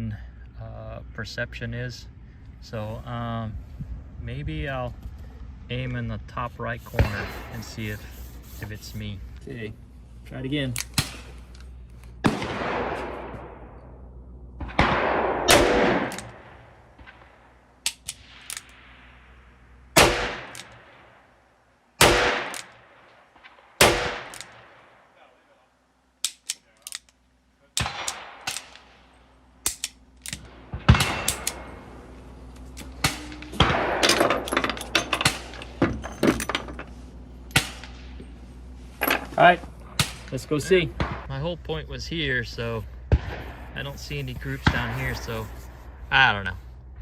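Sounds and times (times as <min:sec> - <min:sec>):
sharp metallic clicks and knocks: 0:14.6 - 0:18.9, 0:22.4 - 0:24.8, 0:26.2 - 0:38.4
revolver shots ringing: 0:27.8 - 0:36.2.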